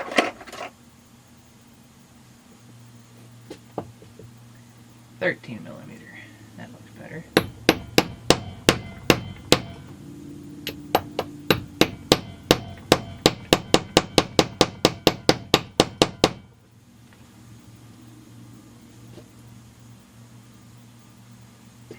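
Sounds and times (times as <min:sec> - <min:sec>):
hammer tapping on metal socket: 0:10.6 - 0:16.4.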